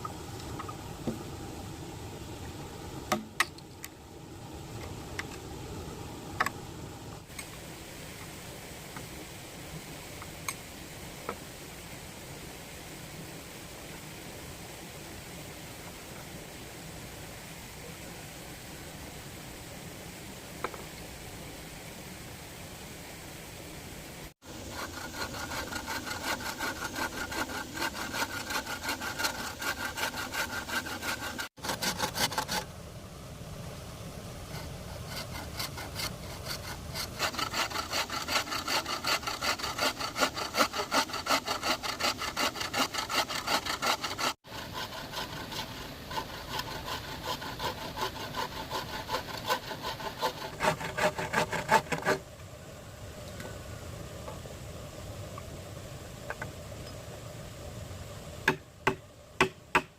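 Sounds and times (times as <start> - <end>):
hand saw cutting bamboo: 24.4 - 32.7, 34.5 - 52.2.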